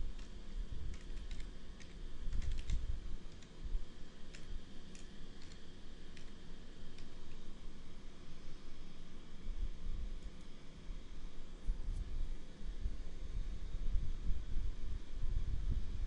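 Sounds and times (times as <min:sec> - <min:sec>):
typing on computer keyboard: 0:00.0 - 0:03.5, 0:04.3 - 0:07.4.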